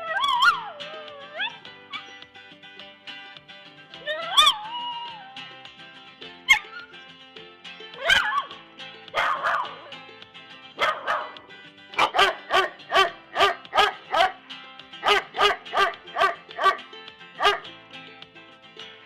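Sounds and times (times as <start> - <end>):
background music: 0.0 - 19.0
dog barking: 9.2 - 9.8, 10.8 - 11.4, 12.0 - 14.4, 15.0 - 16.8, 17.4 - 17.6.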